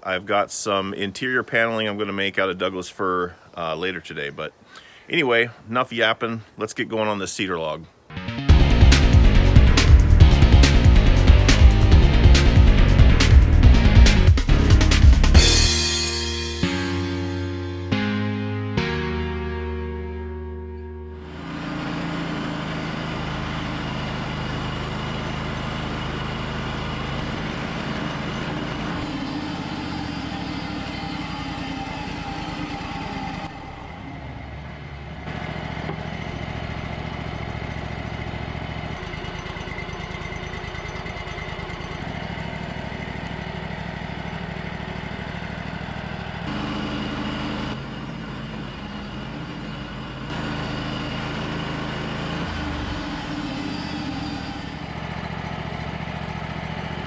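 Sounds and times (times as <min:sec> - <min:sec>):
sawmill engine running: 0:08.5 - 0:17.6, 0:21.1 - 0:57.0.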